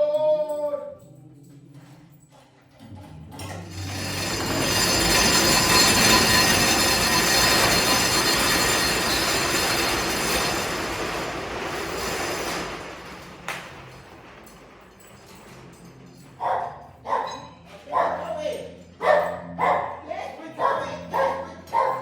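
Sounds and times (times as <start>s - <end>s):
metal-on-metal screech: 3.4s - 16.3s.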